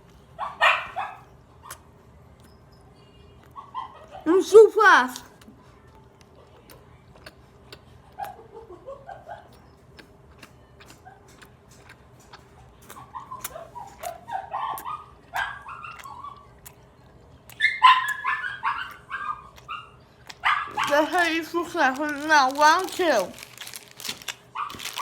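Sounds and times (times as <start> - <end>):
dog whining and yipping: 13.1 - 16.5, 17.6 - 21.1, 24.6 - 25.0.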